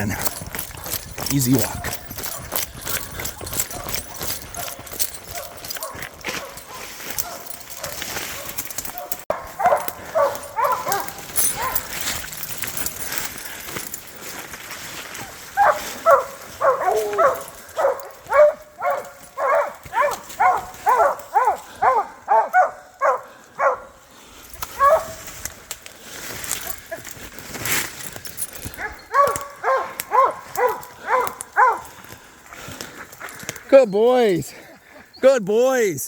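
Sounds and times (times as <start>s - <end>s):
hounds barking: 0.0s - 13.9s, 15.2s - 24.0s, 24.6s - 25.3s, 28.4s - 32.1s.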